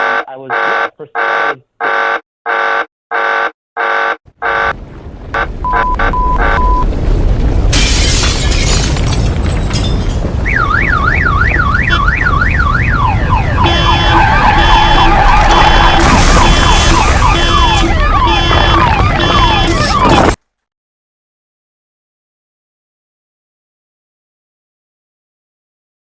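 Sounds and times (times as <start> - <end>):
rushing rumbling noise: 4.7 - 20.4
siren yelping: 5.4 - 6.8, 10.4 - 20.4
overlapping sirens: 5.4 - 6.9, 10.4 - 20.4
pulsing alarm tones: 10.5 - 20.4.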